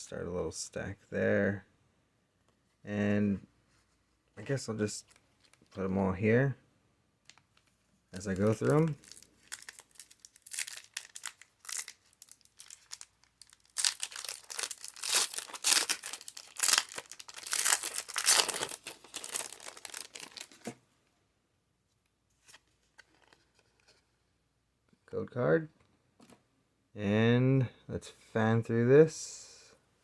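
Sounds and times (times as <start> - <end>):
foil wrapper crinkling and tearing: 8.2 - 20.7.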